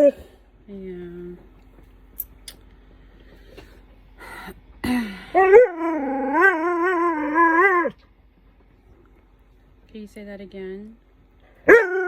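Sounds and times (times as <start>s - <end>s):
dog yelping and whining: 0.0s - 0.2s, 5.4s - 8.0s, 11.6s - 12.0s.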